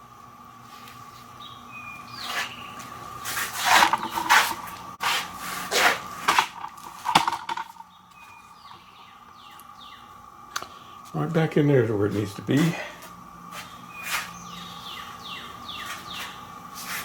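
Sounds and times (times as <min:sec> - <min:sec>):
scrapes rubs and knocks: 0:03.2 - 0:07.4, 0:15.8 - 0:17.0.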